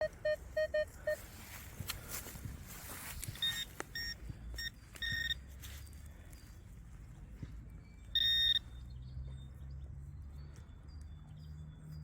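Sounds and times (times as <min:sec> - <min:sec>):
metal detector beeps: 0:00.0 - 0:01.3, 0:03.3 - 0:05.4, 0:08.0 - 0:08.8.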